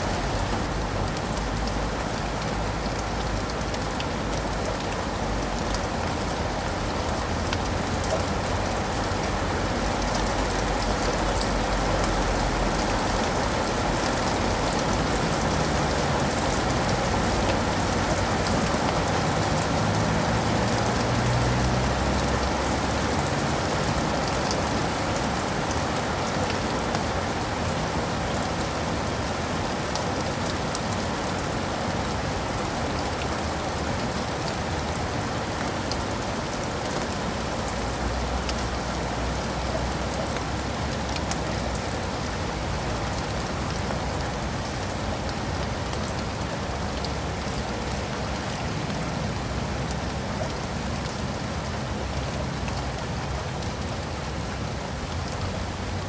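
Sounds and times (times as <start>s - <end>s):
rain on leaves and pavement: 0.0s - 56.0s.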